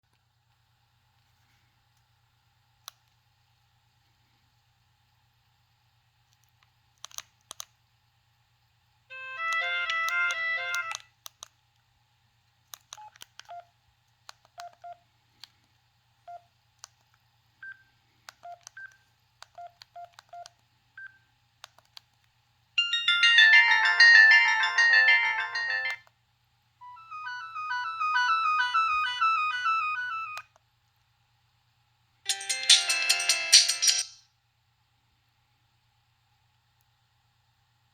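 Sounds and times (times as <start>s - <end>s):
phone ringtone tunes: 9.1s - 11.0s, 22.8s - 26.0s, 26.8s - 30.4s, 32.3s - 34.2s.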